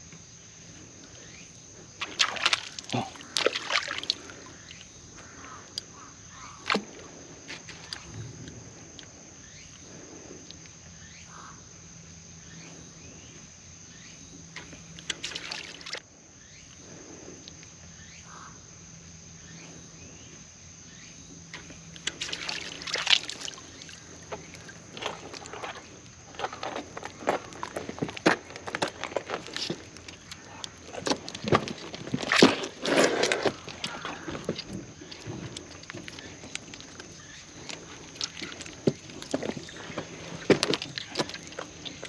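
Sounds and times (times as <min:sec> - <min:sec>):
seawater lapping and sloshing: 0:00.7 - 0:05.5, 0:14.6 - 0:16.0, 0:21.5 - 0:42.0
water splashing and crackling: 0:02.0 - 0:05.9, 0:06.6 - 0:09.1, 0:14.6 - 0:16.0, 0:21.5 - 0:42.0.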